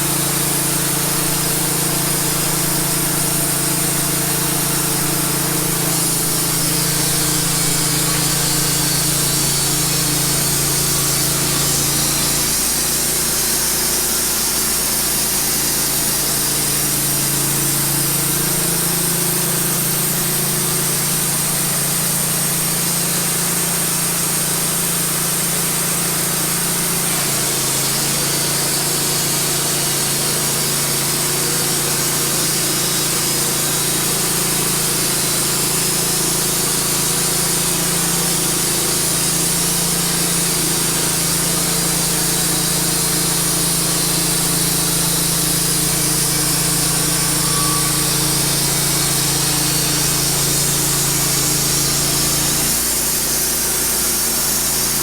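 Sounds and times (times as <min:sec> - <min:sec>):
bandsaw sawmill cutting log: 0:00.0 - 0:55.0
engine under load: 0:00.0 - 0:55.0.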